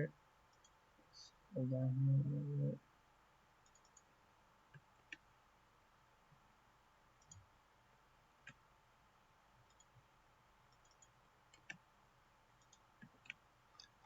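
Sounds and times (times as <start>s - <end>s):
computer mouse clicks: 0.5s - 0.8s, 3.6s - 4.1s, 4.7s - 5.3s, 7.2s - 7.5s, 9.6s - 10.1s, 10.7s - 11.9s, 12.6s - 14.0s.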